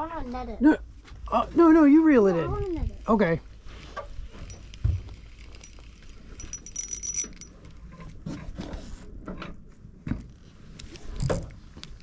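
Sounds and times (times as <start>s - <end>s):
fishing gear clicking and rattling: 4.3s - 7.9s, 11.0s - 12.0s
fishing reel clicking: 6.4s - 7.5s
thump: 11.2s - 11.6s.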